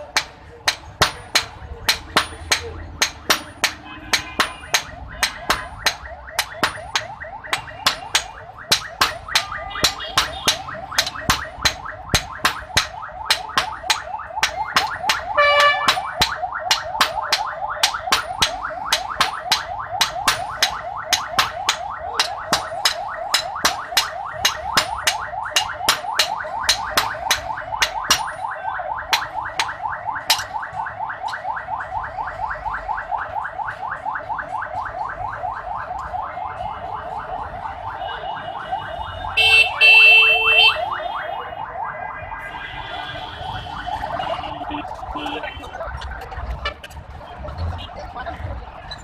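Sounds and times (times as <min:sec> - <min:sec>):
hammer striking iron on anvil: 0:00.0 - 0:28.4, 0:29.1 - 0:30.5.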